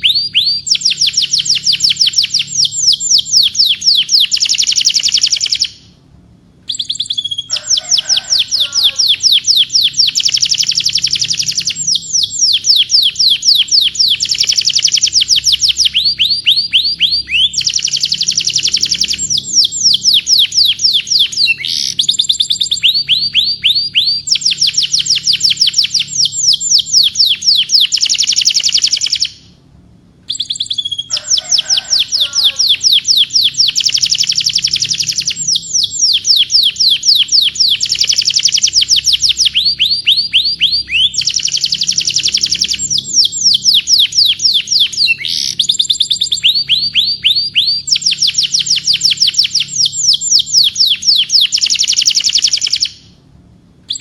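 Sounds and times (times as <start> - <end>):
canary singing trills: 0.0 - 6.0, 6.6 - 29.6, 30.2 - 53.2.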